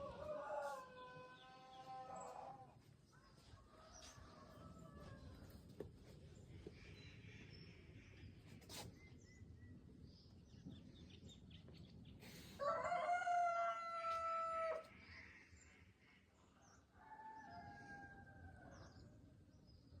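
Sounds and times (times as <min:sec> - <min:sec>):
rooster crowing: 0:00.0 - 0:02.6, 0:12.6 - 0:14.9.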